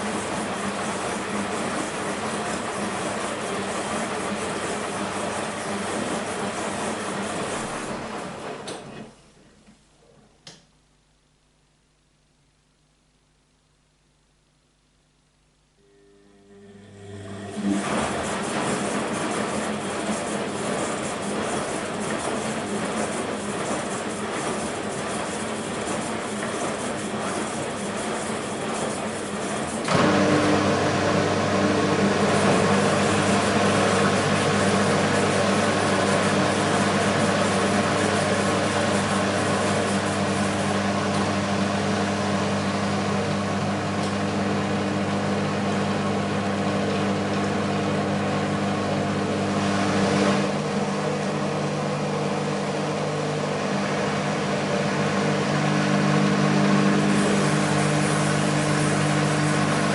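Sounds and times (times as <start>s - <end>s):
washing machine drum motor humming: 15.8s - 59.9s.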